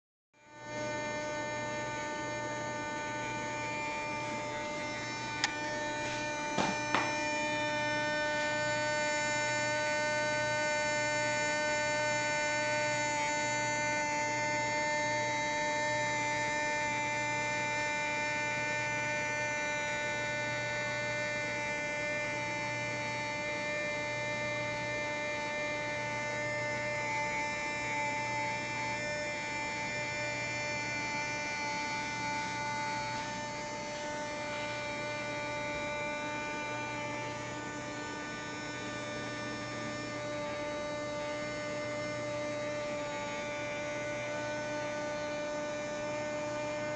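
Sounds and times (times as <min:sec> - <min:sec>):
motorised door humming: 0:00.6 - 0:09.6.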